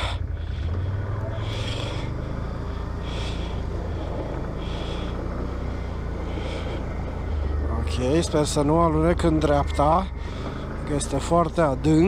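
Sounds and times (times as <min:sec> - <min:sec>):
atv engine running at low revs: 0:00.0 - 0:12.0.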